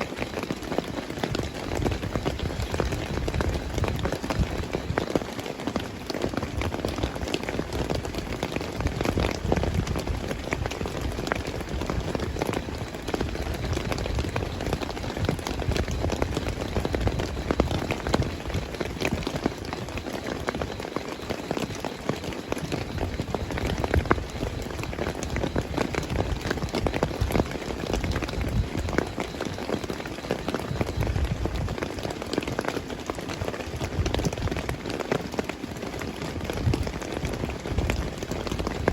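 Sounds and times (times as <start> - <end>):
heavy rain falling: 0.0 - 38.9.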